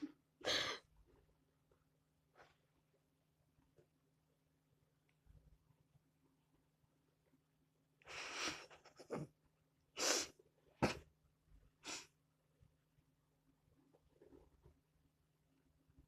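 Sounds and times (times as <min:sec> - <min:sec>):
tiny wheezing laugh: 0:08.2 - 0:09.4.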